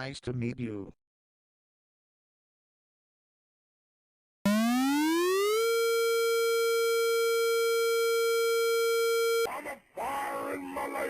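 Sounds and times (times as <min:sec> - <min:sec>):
synthesized warning siren: 0:04.5 - 0:09.5.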